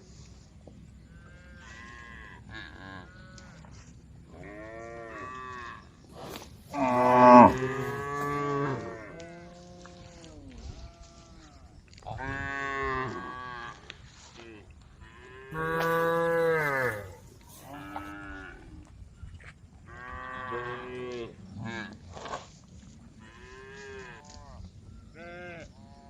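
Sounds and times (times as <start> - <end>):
cows mooing: 6.3 - 9.2, 15.6 - 18.5.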